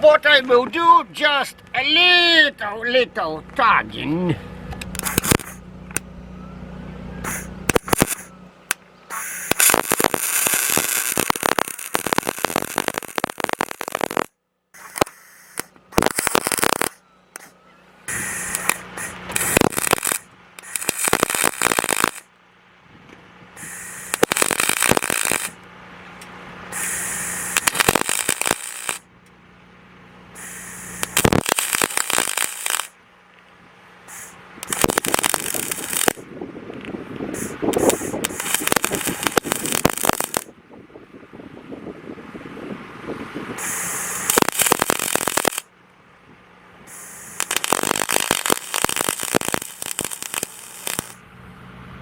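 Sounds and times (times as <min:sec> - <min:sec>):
welding arc crackling and sizzling: 0:04.9 - 0:05.6, 0:07.3 - 0:08.3, 0:09.1 - 0:17.5, 0:18.1 - 0:22.3, 0:23.6 - 0:25.6, 0:26.8 - 0:29.1, 0:30.4 - 0:33.0, 0:34.1 - 0:36.3, 0:37.4 - 0:40.5, 0:43.6 - 0:45.7, 0:46.9 - 0:51.2.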